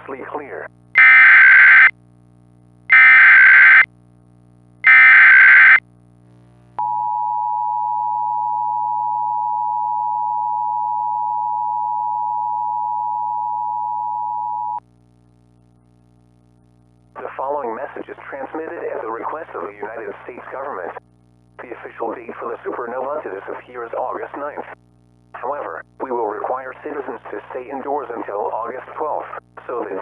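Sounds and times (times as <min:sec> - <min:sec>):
screeching digital data bursts: 0:01.0 - 0:01.9, 0:02.9 - 0:03.8, 0:04.9 - 0:05.8.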